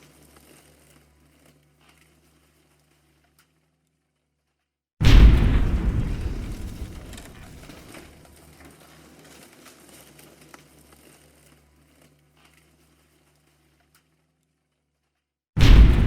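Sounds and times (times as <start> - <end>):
explosion rumble with crackles: 5.0 - 8.1, 15.6 - 16.0.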